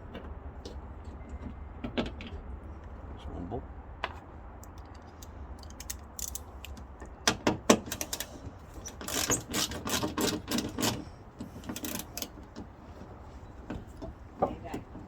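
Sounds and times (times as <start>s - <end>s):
socket ratchet clicking: 4.6s - 6.8s.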